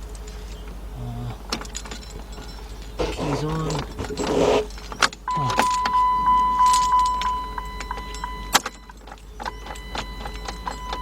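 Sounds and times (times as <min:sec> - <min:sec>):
keys jangling and clicking: 0:01.5 - 0:11.0
car warning chime beeping: 0:05.3 - 0:11.0.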